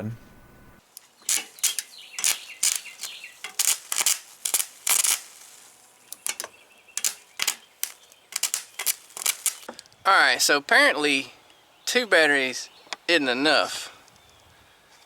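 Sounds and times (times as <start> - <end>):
arc welding crackling: 0.8 - 9.7.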